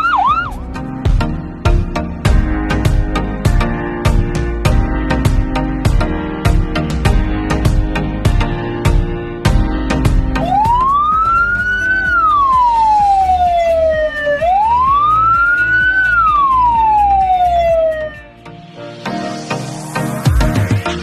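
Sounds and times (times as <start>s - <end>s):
ambulance siren wailing: 0.0s - 0.6s, 10.4s - 18.3s
background music: 0.0s - 21.0s.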